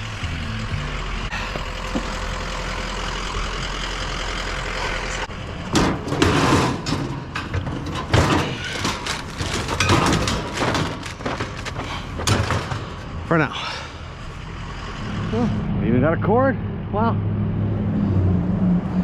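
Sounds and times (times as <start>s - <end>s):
vehicle engine idling: 0.0s - 6.2s
items knocking and clattering: 1.5s - 2.2s, 5.7s - 13.2s.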